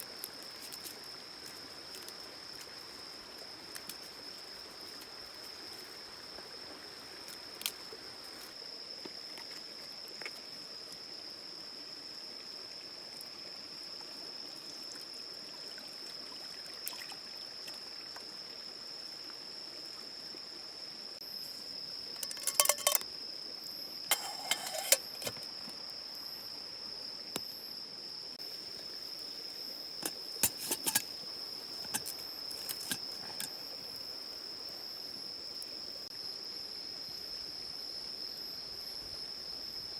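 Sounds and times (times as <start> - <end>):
high insect trill: 21.2 - 39.9
clicks and clatter: 22.2 - 23.0, 30.0 - 31.1, 31.8 - 33.5.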